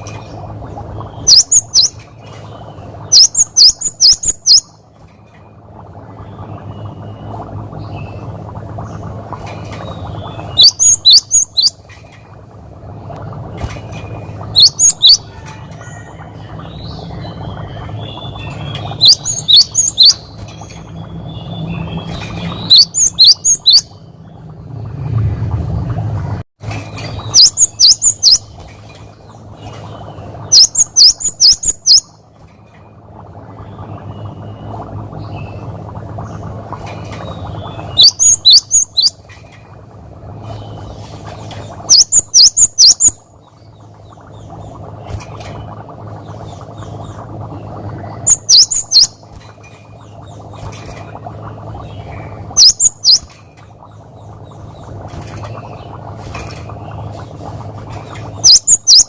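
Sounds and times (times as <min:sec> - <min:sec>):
steady low hum: 0:00.0 - 0:59.0
bird singing whistled notes: 0:01.2 - 0:02.0, 0:03.1 - 0:04.8, 0:10.3 - 0:11.8, 0:14.6 - 0:15.2, 0:18.9 - 0:20.3, 0:21.0 - 0:23.9, 0:27.2 - 0:28.4, 0:37.8 - 0:39.2, 0:48.3 - 0:49.2, 0:52.6 - 0:53.3, 0:58.4 - 0:59.0.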